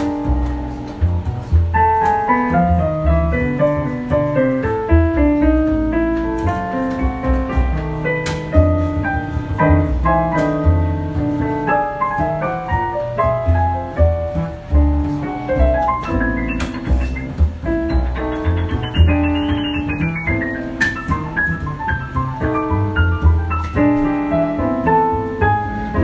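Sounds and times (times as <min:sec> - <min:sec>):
bass playing low notes: 0:00.0 - 0:26.0
jazz keyboard solo: 0:00.0 - 0:26.0.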